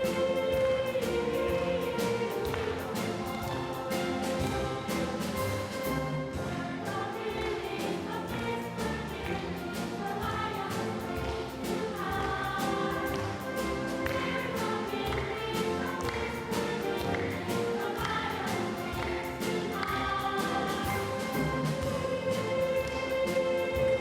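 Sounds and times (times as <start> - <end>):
children's choir singing: 0.0 - 24.0
orchestra playing: 0.0 - 24.0.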